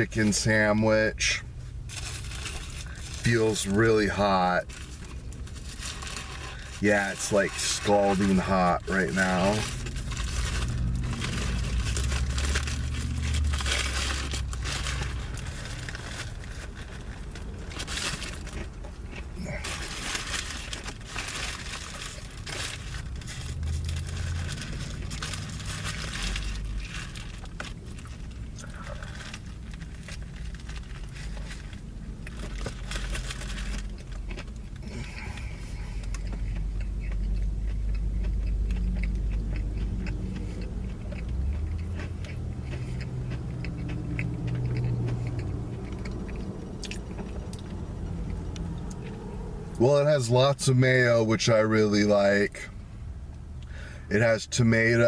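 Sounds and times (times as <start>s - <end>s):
low steady rumble: 0.0s - 55.0s
paper wrapper crinkling: 1.9s - 18.8s, 19.5s - 35.1s.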